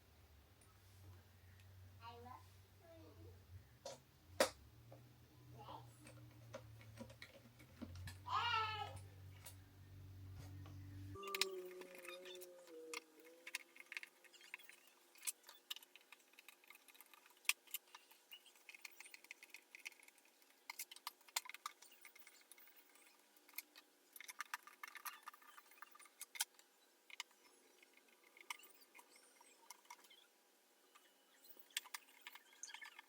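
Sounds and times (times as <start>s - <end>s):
small parts clicking and tapping: 5.9s - 8.3s, 10.4s - 30.3s, 30.9s - 33.0s.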